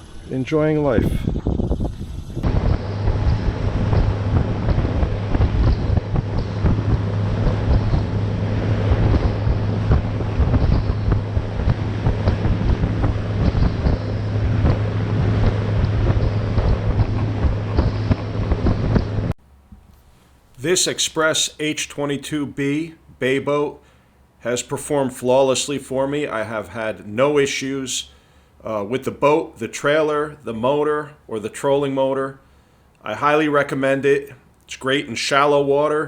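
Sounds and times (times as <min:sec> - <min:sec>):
wind buffeting microphone: 0:00.0 - 0:19.4
outboard motor running: 0:01.4 - 0:19.4.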